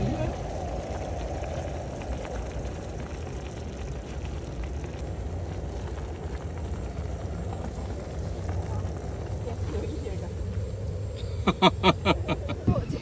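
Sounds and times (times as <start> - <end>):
wind buffeting microphone: 0.0 - 5.0, 12.5 - 13.0.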